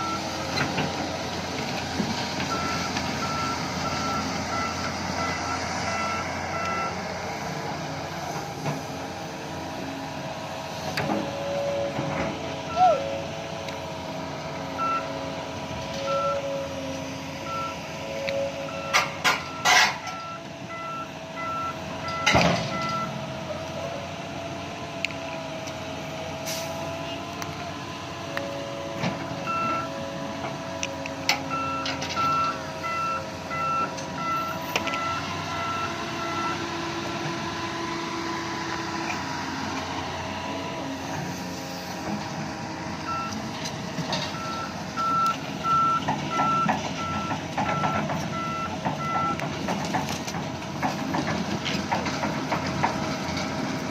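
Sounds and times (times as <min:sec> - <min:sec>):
diesel engines running: 0:00.0 - 0:53.9
reverse alarm beeping: 0:02.5 - 0:07.0, 0:14.8 - 0:15.1, 0:31.5 - 0:36.6, 0:44.4 - 0:49.4.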